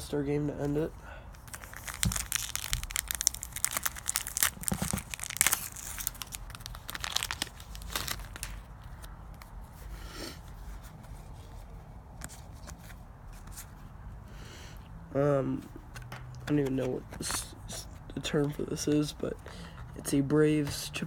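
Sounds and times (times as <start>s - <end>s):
plastic wrapper crinkling and tearing: 1.4s - 9.6s.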